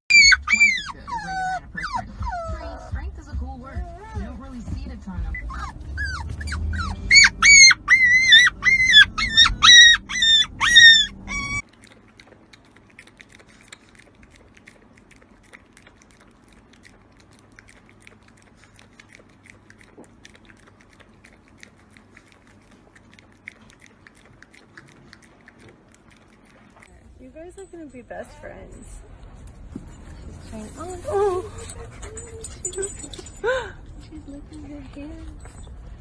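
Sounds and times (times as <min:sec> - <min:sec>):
animal squeaky calls: 0:00.1 - 0:02.7, 0:05.4 - 0:11.6.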